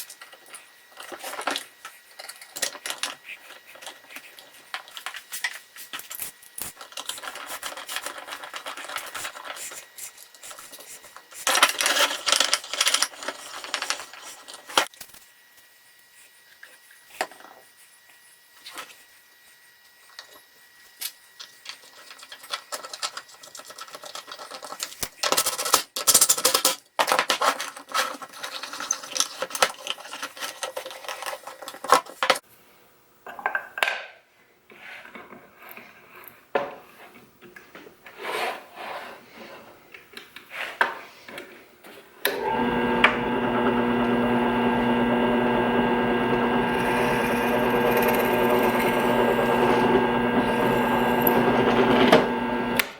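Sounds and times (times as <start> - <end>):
power tool motor running: 42.3 - 52.9.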